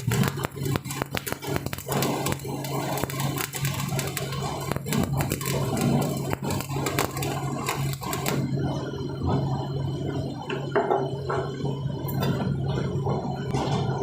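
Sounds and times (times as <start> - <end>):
welding arc crackling: 0.0 - 9.6.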